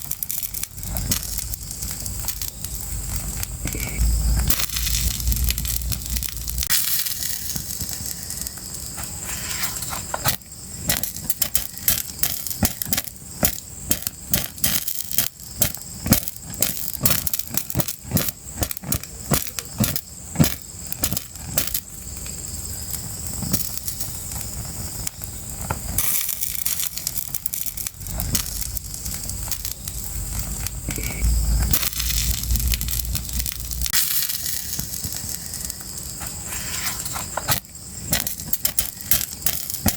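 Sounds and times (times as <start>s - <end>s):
fire crackling and popping: 0.0s - 39.9s
low rumble: 0.5s - 6.8s, 27.9s - 34.0s.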